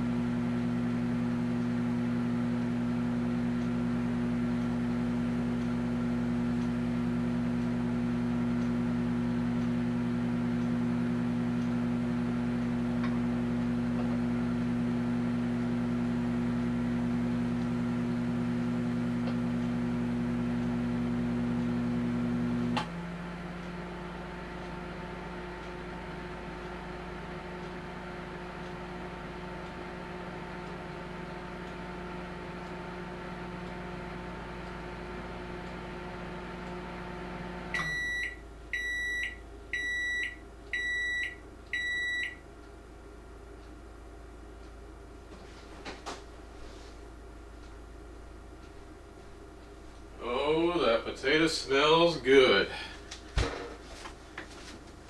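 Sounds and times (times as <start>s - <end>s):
cooling fan hum: 0.0s - 55.0s
microwave oven humming: 0.0s - 55.0s
microwave click: 37.7s - 42.4s.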